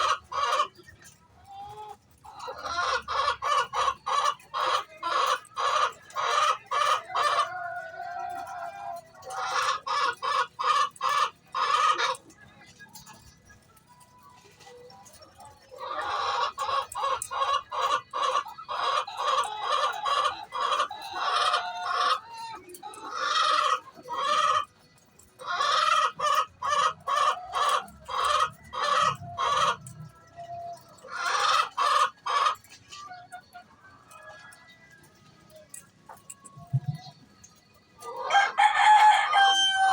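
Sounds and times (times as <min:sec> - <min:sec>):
hen cackling: 0:15.8 - 0:24.7, 0:25.4 - 0:30.0, 0:30.7 - 0:33.4, 0:38.1 - 0:39.9.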